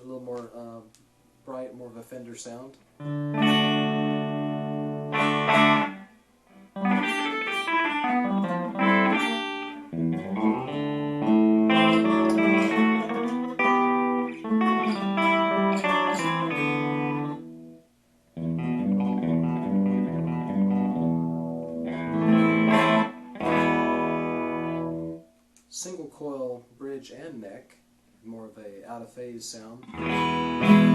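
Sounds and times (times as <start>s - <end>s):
electric guitar notes and chords: 2.9s - 25.4s, 29.8s - 30.9s.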